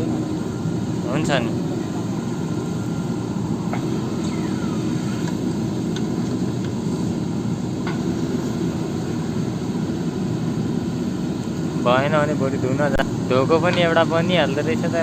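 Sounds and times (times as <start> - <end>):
diesel engine rumbling: 0.0 - 15.0
brief falling squeal: 4.2 - 5.2.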